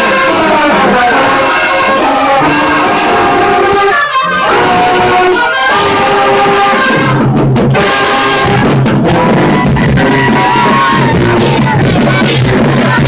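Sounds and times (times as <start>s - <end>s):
drums: 0.0s - 13.0s
low bass line: 0.0s - 13.0s
trumpets and trombones playing: 0.0s - 13.0s.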